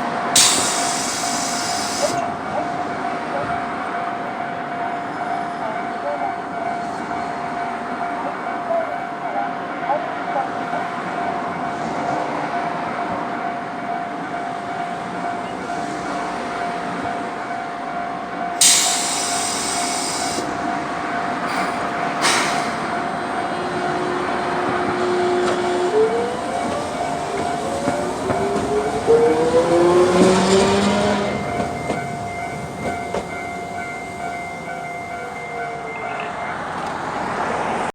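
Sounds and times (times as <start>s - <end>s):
tram motor whine rising: 0.3s - 3.0s, 18.6s - 37.9s
level crossing bell: 23.0s - 36.8s.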